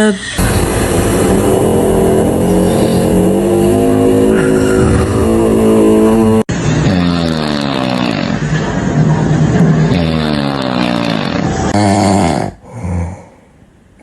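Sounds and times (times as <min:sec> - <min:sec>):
loud buzzing snoring: 0:01.2 - 0:08.5, 0:09.9 - 0:13.3.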